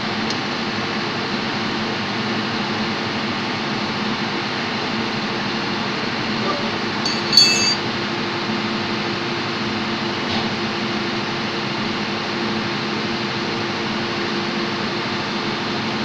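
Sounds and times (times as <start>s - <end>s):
engine-room machinery droning: 0.0s - 16.0s
metal tool clinking on metal: 7.0s - 7.8s.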